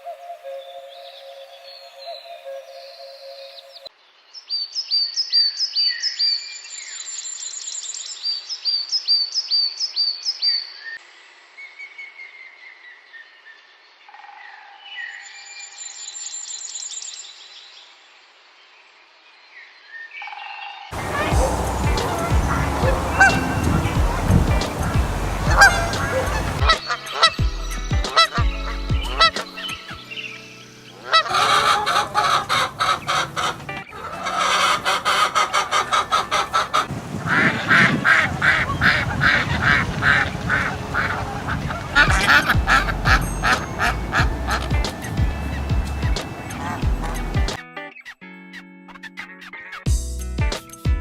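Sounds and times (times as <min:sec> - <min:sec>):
waterfowl honking: 0:21.0 - 0:30.1, 0:30.8 - 0:47.6.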